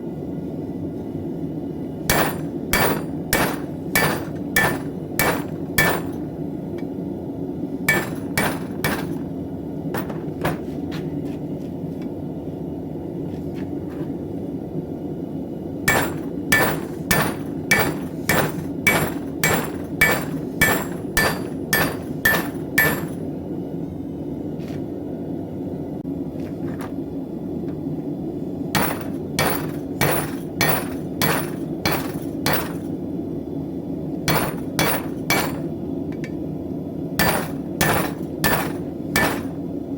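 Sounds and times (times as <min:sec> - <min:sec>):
steady low rumble: 0:00.5 - 0:11.2
hammer striking anvil: 0:02.1 - 0:06.2, 0:07.9 - 0:09.2, 0:10.0 - 0:10.6, 0:15.9 - 0:23.2, 0:28.8 - 0:32.9, 0:34.3 - 0:36.4, 0:37.2 - 0:39.6.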